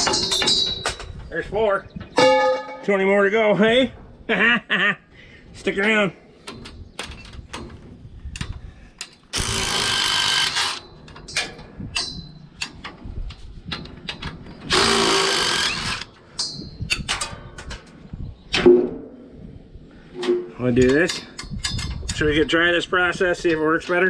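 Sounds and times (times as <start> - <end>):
metal parts clicking and knocking: 0.0 - 1.3, 20.8 - 22.4
power drill spinning nuts: 9.3 - 10.8, 14.7 - 16.1.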